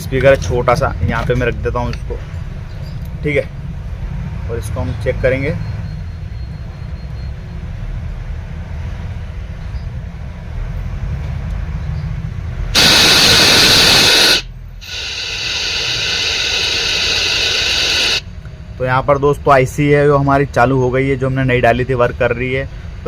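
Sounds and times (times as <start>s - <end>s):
radio static hiss: 12.8s - 18.2s
speaker low hum: 12.8s - 18.2s.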